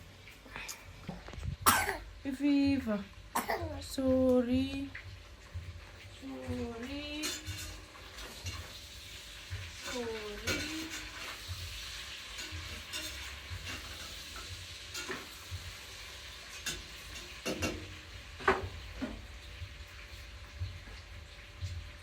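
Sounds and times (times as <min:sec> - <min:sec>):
food sizzling in a frying pan: 0:00.0 - 0:22.0
utensil knocking against pan: 0:16.6 - 0:19.2.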